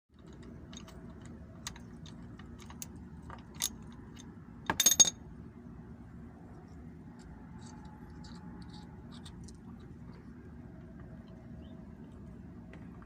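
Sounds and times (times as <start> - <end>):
low steady hum: 0.1 - 13.0
light metallic clicks and clinks: 0.2 - 5.2.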